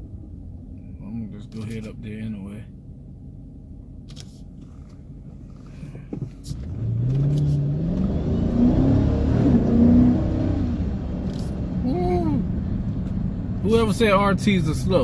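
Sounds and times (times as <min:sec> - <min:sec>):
car engine accelerating: 0:04.6 - 0:15.0.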